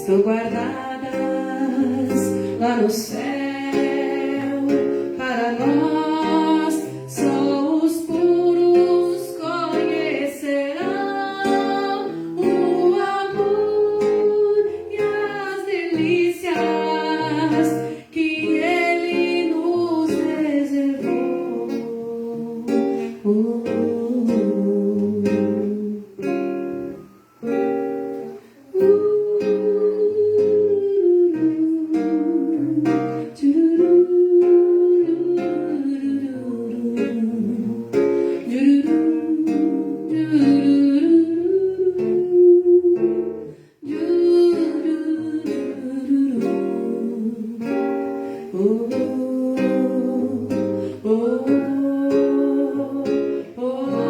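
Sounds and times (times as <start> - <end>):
acoustic guitar chords: 0.0 - 54.0.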